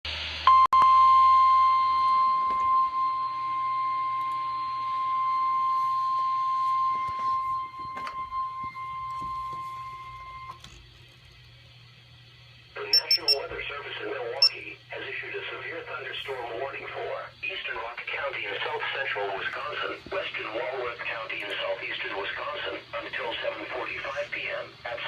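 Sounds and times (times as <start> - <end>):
steady warning alarm tone: 0.5 - 10.6, 12.8 - 13.6, 14.4 - 14.7.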